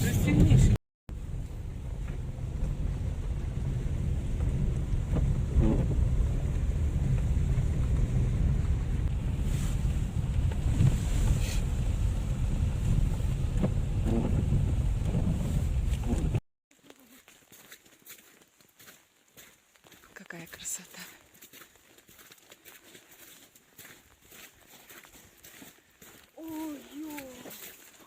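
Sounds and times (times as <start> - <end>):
car interior rumble: 0.0 - 16.4.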